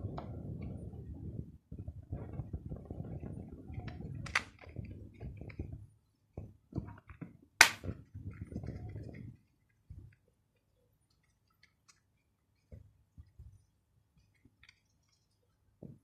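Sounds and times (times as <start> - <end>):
handling noise rubbing and scraping: 0.0 - 10.2.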